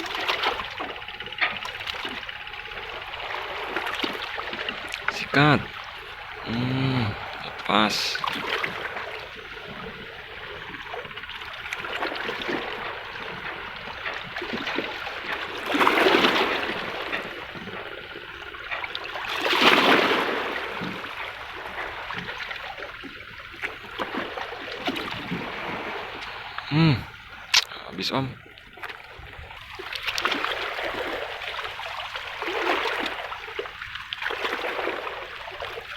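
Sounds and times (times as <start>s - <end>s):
seawater trickling among rocks: 0.0s - 35.9s
waves surging: 1.8s - 22.8s, 23.5s - 28.4s.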